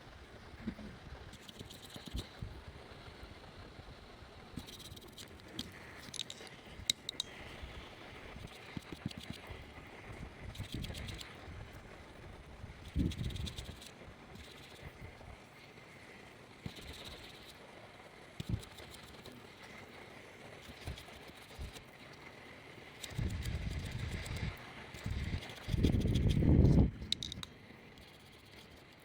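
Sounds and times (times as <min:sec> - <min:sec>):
faint steady hiss: 0:00.0 - 0:29.0
tools knocking and clicking: 0:05.2 - 0:07.4, 0:27.0 - 0:27.5.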